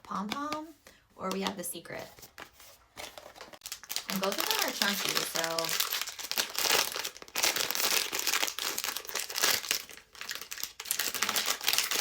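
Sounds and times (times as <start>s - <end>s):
packaging crumpled and torn: 3.1s - 12.0s.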